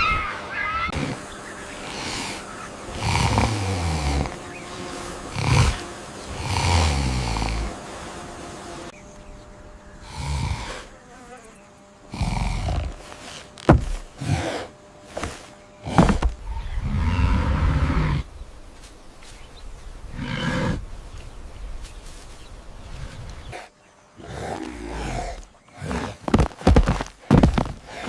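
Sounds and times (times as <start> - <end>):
animal growls and grunts: 0.0 - 4.4, 5.3 - 7.8, 10.0 - 10.9, 12.1 - 18.4, 20.0 - 20.9, 22.8 - 28.0.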